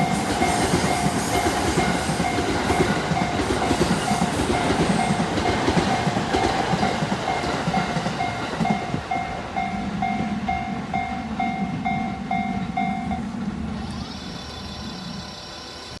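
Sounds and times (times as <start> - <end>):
level crossing alarm dinging: 0.0 - 16.0
passing train clatter and rumble: 0.0 - 16.0.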